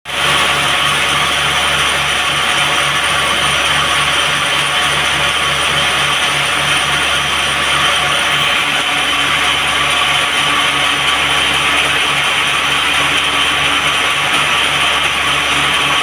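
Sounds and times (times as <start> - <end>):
band saw whirring: 0.1 - 16.0.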